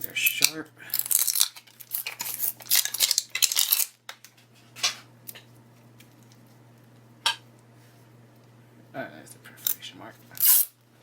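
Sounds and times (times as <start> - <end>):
plastic wrapper crinkling and tearing: 1.0 - 4.0.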